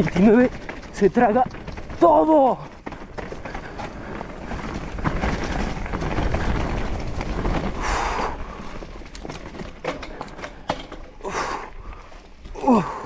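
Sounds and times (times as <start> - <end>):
bike rolling over rocky trail: 0.0 - 13.0
bike clicks and knocks: 8.7 - 11.4.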